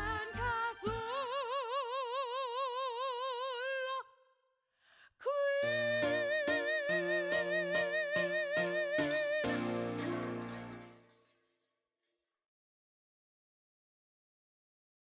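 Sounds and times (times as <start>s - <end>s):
singing with wide vibrato: 0.0s - 4.1s, 5.2s - 10.8s
plucked bass line: 8.8s - 11.0s.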